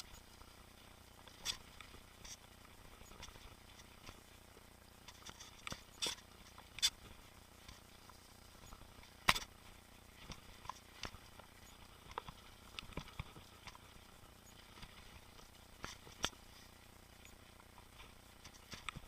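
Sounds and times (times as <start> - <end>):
bike rattling over rough trail: 0.0 - 19.0
faint steady hiss: 0.0 - 19.0.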